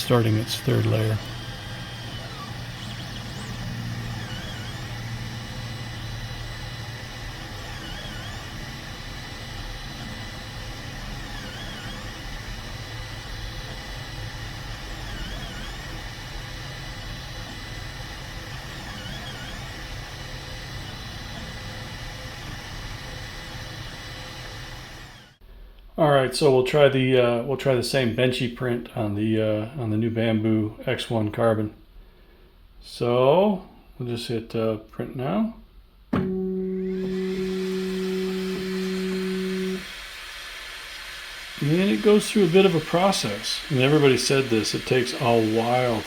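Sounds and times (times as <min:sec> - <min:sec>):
resin printer humming and whirring: 0:00.0 - 0:25.4, 0:36.2 - 0:46.0.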